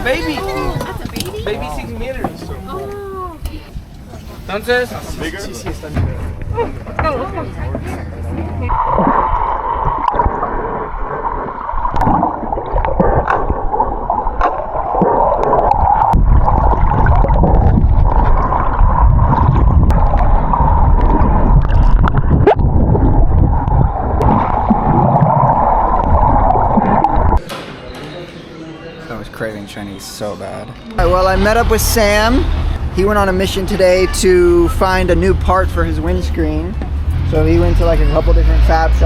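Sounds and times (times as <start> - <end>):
muffled underwater gurgling: 8.7 - 27.4.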